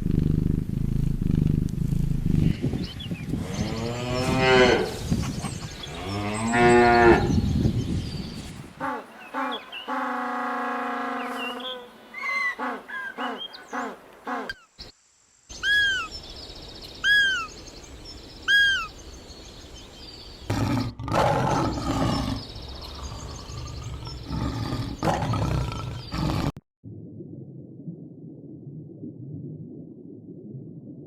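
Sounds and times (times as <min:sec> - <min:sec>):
high chirping birds: 0:02.5 - 0:14.9, 0:15.5 - 0:26.5
rough noisy animal calls: 0:08.8 - 0:14.7
loud whistle-like animal calls: 0:15.6 - 0:16.1.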